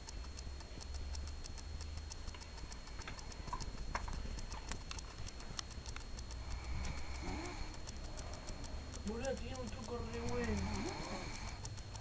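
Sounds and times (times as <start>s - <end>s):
fast even ticking: 0.0s - 12.0s
sharp clicks: 0.0s - 12.0s
person snoring deeply: 6.6s - 7.7s.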